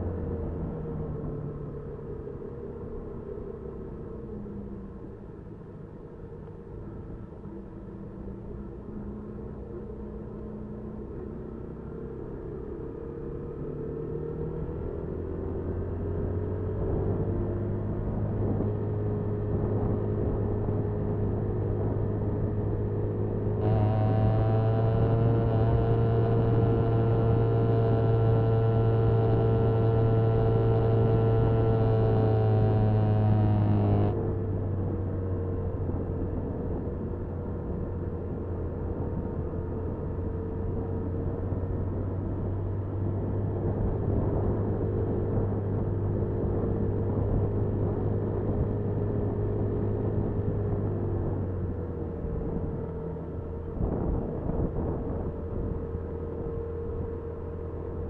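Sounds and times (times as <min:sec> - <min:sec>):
road and wind rumble: 0:00.0 - 0:58.0
motorcycle engine running: 0:15.2 - 0:58.0.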